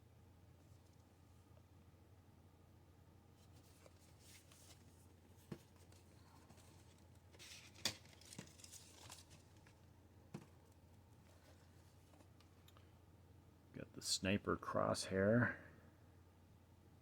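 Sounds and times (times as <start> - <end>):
plastic window box crinkling: 3.7 - 9.8.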